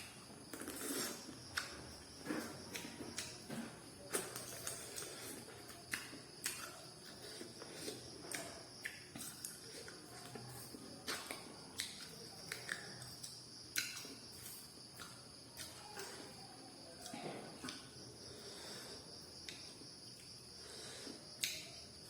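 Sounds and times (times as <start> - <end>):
chewing crunches: 0.0 - 3.4
wet mouth clicks: 21.4 - 21.6.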